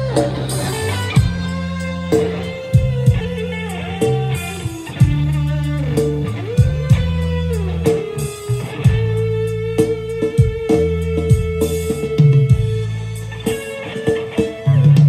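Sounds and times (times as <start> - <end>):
deep bass notes: 0.0 - 13.6
electric guitar lead: 0.0 - 15.0
sharp beats: 0.0 - 15.0.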